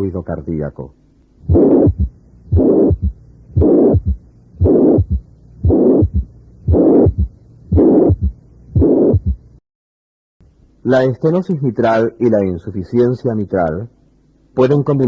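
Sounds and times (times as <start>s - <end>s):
heartbeat with murmur: 1.4s - 9.5s.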